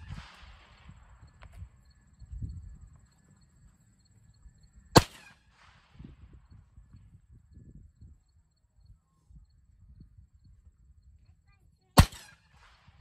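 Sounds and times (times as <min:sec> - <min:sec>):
rifle shot: 0:00.0 - 0:01.1, 0:04.9 - 0:06.0, 0:12.0 - 0:13.0.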